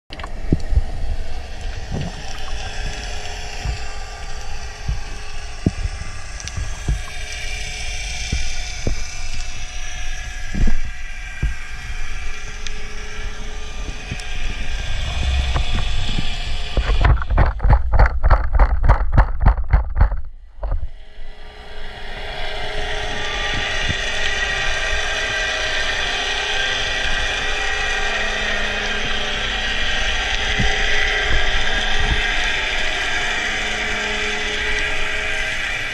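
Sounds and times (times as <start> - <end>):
underwater rushing: 0.1 - 18.7, 20.6 - 35.9
rhythmic pulsing: 0.3 - 18.0
clicks and knocks: 16.8 - 20.8.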